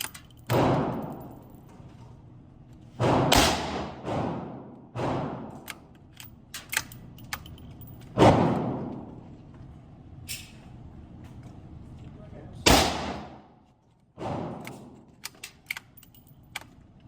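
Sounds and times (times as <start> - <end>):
gunshots with echo: 3.0 - 5.5, 8.2 - 8.9, 12.7 - 13.5.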